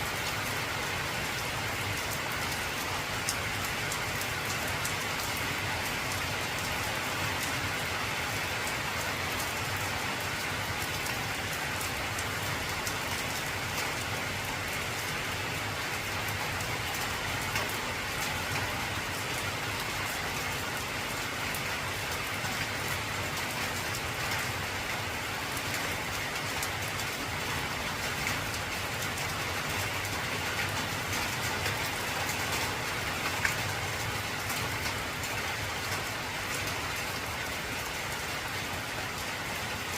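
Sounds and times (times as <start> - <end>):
heavy rain on a tin roof: 0.0 - 39.9.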